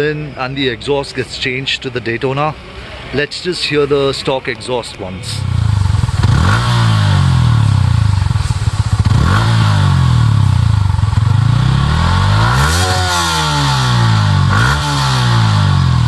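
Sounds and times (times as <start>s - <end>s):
motorcycle engine revving: 5.3s - 16.0s.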